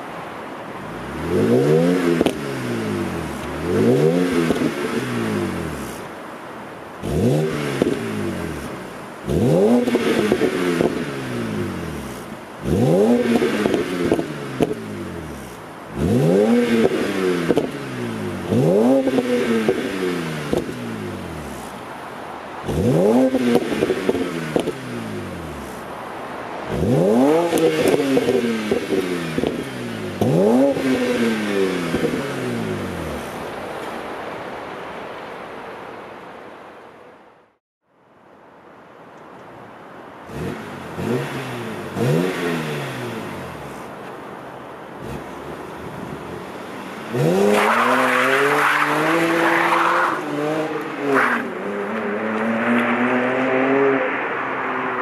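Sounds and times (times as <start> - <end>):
car engine revving: 1.0 - 6.2, 7.0 - 21.9, 22.6 - 33.6, 40.2 - 44.0, 44.8 - 55.0
exhaust crackles and pops: 1.6 - 2.5, 3.2 - 5.0, 7.1 - 21.8, 22.6 - 34.1.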